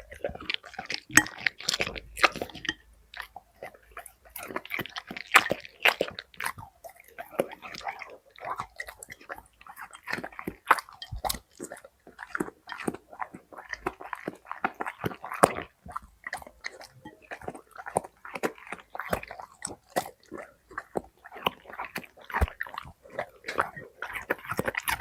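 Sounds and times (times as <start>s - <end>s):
dog crunching a carrot: 0.0s - 25.0s.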